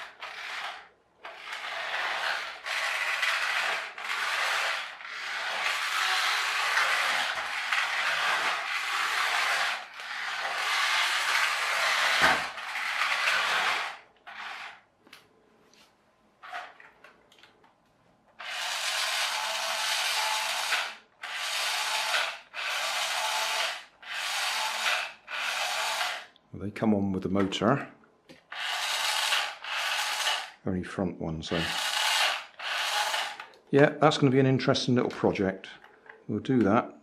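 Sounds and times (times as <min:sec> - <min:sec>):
toy car motor whirring: 0:00.0 - 0:14.9, 0:16.4 - 0:16.8, 0:18.4 - 0:26.3, 0:28.3 - 0:30.6, 0:31.5 - 0:33.6.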